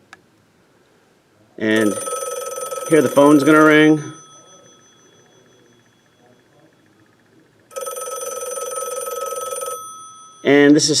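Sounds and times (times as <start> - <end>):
telephone bell ringing: 1.8 - 11.0.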